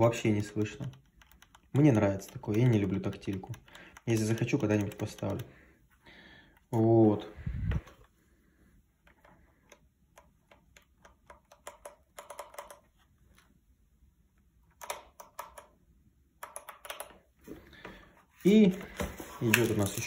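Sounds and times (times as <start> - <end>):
mechanical keyboard typing: 0.0 - 5.5, 9.2 - 12.8, 14.8 - 15.8, 16.4 - 17.3.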